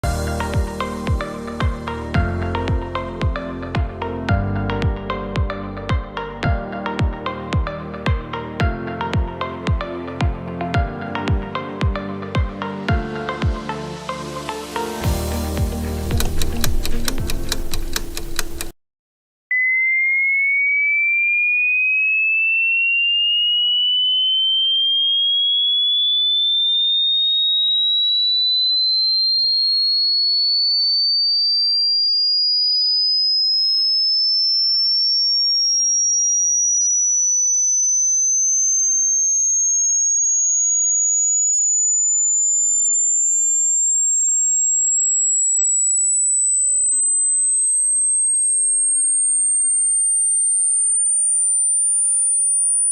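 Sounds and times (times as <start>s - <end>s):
rising sine tone sweep: 0.0s - 6.4s, 19.5s - 52.9s
short music: 0.0s - 18.4s.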